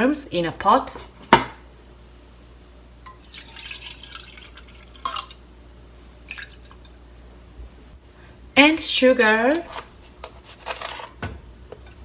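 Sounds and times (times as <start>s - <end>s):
water poured into a pot: 3.1s - 5.5s, 6.2s - 7.0s.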